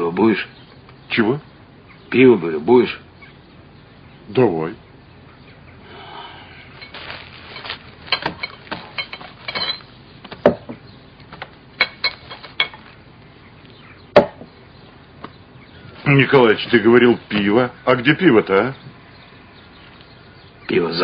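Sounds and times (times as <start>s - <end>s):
sharp clinks and knocks: 6.8s - 10.8s, 11.4s - 13.0s.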